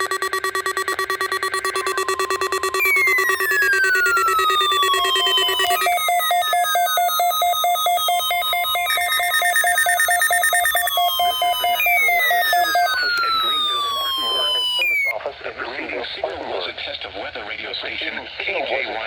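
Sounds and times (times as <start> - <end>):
falling-pitch electronic sweep: 0.0 - 15.1
pulsing electronic alarm tones: 0.0 - 15.2.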